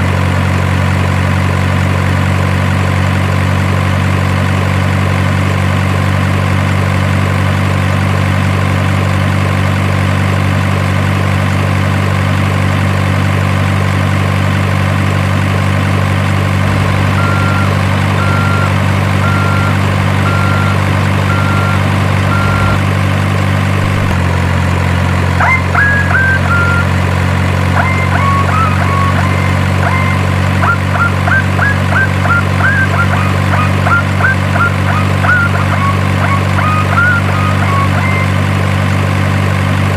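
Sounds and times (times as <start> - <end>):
simulated diesel engine idling: 0.0 - 39.9
high beeps: 16.7 - 22.8, 25.4 - 27.0, 27.8 - 38.4.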